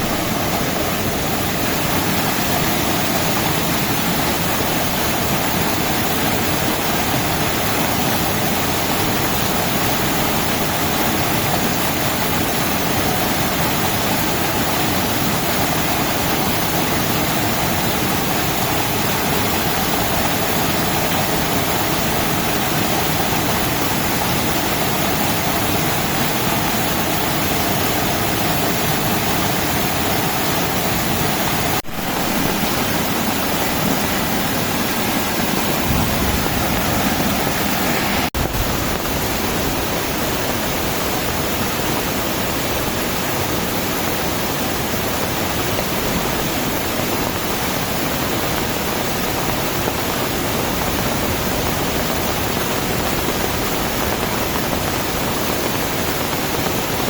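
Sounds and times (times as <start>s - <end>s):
heavy rain pouring: 0.0s - 57.0s.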